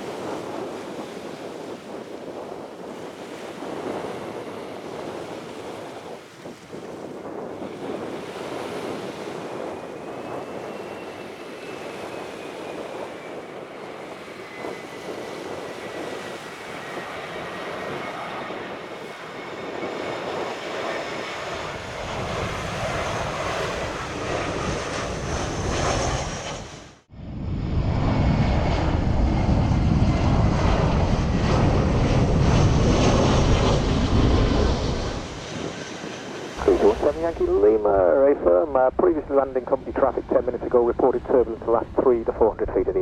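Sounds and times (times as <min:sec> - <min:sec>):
jet engines approaching: 0:00.0 - 0:06.3, 0:07.0 - 0:43.0
wind buffeting microphone: 0:00.0 - 0:43.0
high engine whine: 0:21.2 - 0:43.0.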